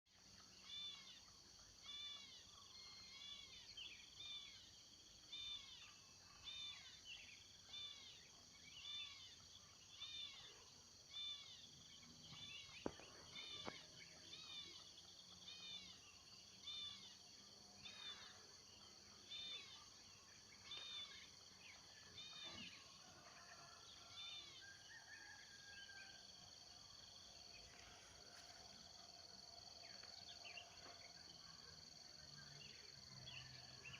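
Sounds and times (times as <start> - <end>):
songbird calling: 0.4 - 4.7, 5.3 - 26.0.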